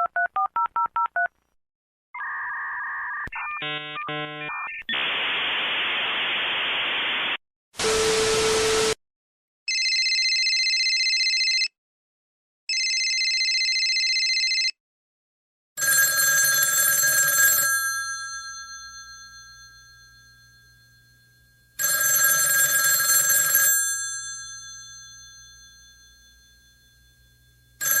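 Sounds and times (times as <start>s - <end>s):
telephone bell ringing: 9.7s - 11.8s, 12.7s - 14.8s, 15.8s - 28.0s.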